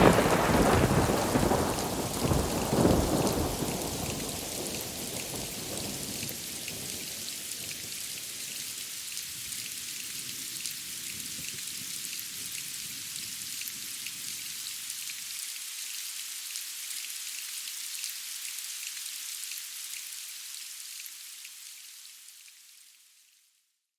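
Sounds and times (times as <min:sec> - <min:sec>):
low rumble of thunder: 0:00.0 - 0:07.3
steady rain: 0:00.0 - 0:23.6.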